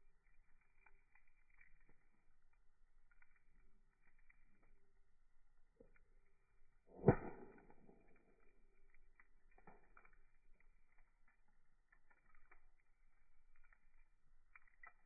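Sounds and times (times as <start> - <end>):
fire crackling: 0.0 - 15.0
wood fire pop: 5.7 - 15.0.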